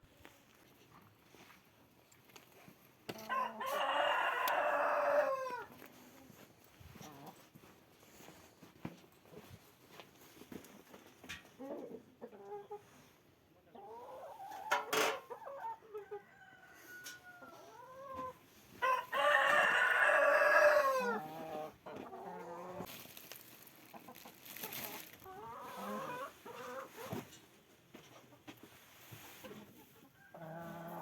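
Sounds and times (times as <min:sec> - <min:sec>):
chickens clucking: 0:03.1 - 0:07.6, 0:10.9 - 0:16.2, 0:17.0 - 0:31.0
rooster crowing: 0:03.3 - 0:05.7, 0:18.8 - 0:21.3.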